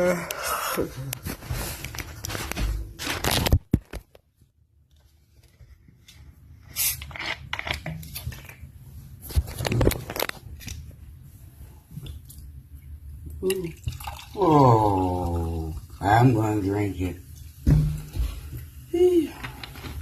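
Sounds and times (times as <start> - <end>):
crinkling handling noise: 1.0 - 11.8.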